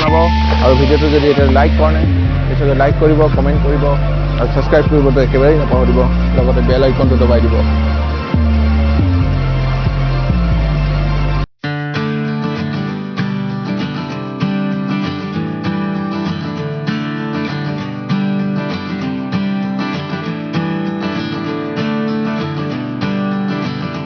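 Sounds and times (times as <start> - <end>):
strummed acoustic guitar: 11.6 - 24.0.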